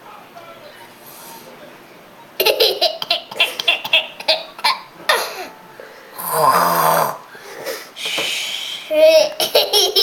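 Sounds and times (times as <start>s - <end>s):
boy giggling: 8.9s - 10.0s.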